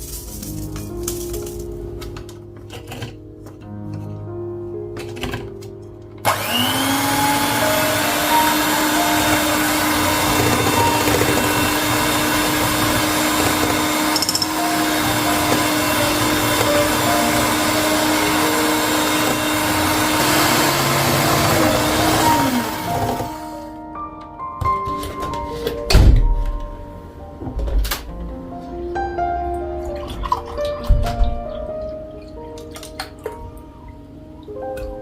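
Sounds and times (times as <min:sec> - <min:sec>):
appliance electric motor spinning: 0:06.2 - 0:23.7.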